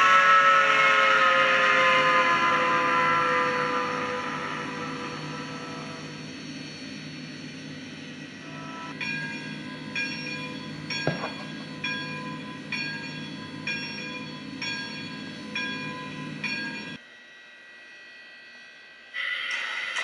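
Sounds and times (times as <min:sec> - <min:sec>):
locomotive bell ringing: 0:08.4 - 0:17.0.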